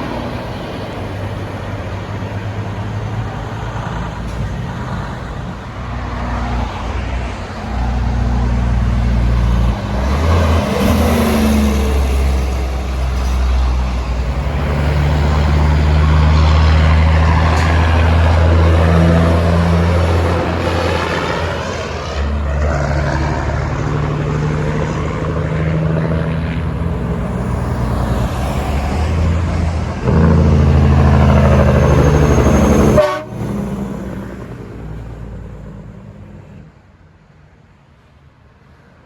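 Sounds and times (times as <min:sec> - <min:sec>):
passing truck road noise: 0:00.0 - 0:39.0
train horn chords: 0:32.3 - 0:33.5.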